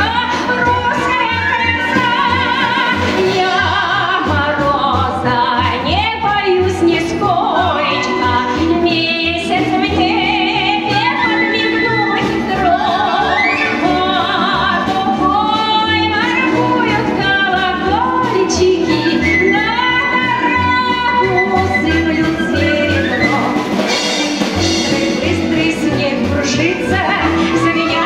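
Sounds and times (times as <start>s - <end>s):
instrumental backing with bass: 0.0s - 28.0s
woman singing high melody: 6.9s - 23.6s, 25.2s - 28.0s.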